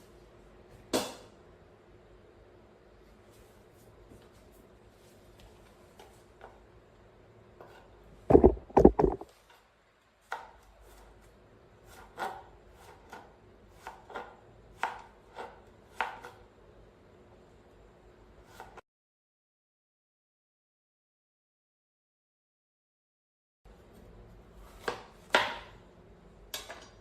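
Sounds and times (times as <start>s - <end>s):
sharp knocks and taps: 8.3s - 9.2s.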